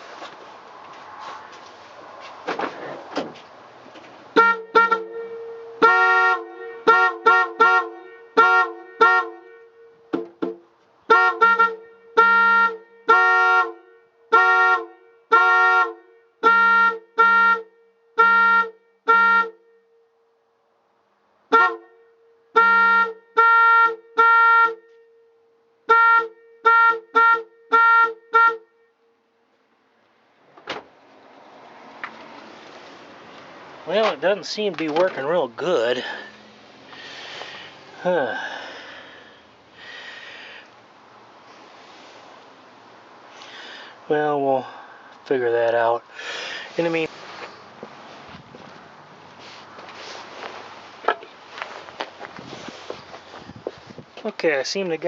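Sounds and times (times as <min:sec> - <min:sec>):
van horn honking: 0:04.3 - 0:20.3, 0:21.4 - 0:29.2, 0:33.9 - 0:40.6.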